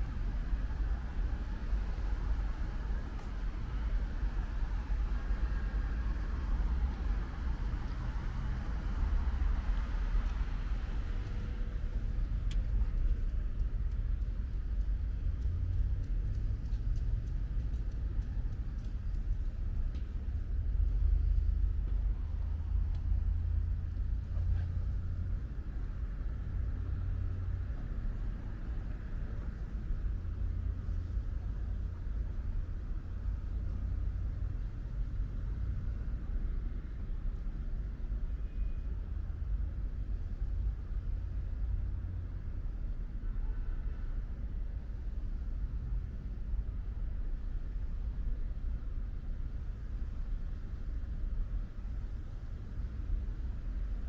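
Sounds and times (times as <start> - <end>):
distant road traffic rumble: 0.0 - 54.0
faint ticks: 12.3 - 25.4.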